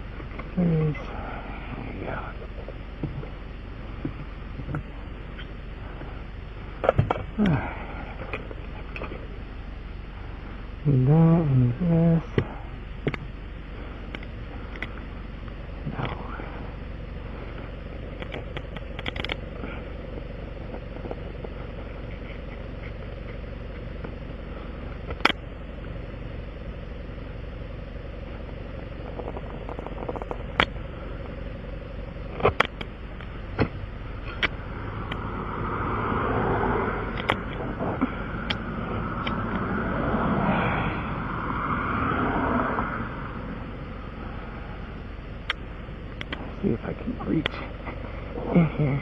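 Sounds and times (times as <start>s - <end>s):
low engine hum: 0.0s - 49.0s
rushing sound: 34.5s - 44.8s.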